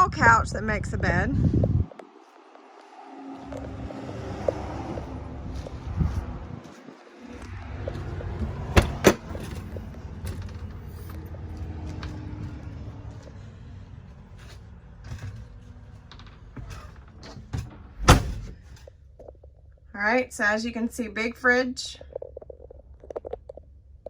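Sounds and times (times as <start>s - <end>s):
low rumble of wind and handling: 0.0s - 24.0s
sharp clacks of trailer door: 8.4s - 10.8s, 16.6s - 18.8s.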